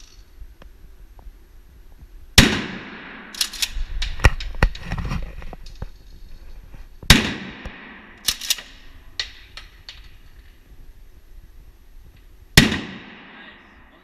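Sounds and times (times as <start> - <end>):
gunshot with echo: 2.4 - 3.8, 7.1 - 8.5, 12.6 - 13.8
sharp cracks: 2.4 - 6.2, 7.0 - 10.6, 12.2 - 13.8.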